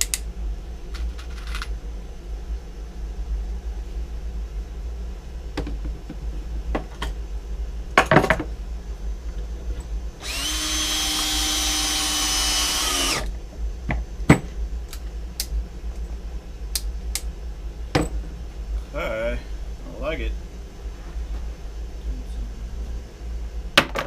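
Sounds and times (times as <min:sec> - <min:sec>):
power drill running: 0:10.2 - 0:13.3.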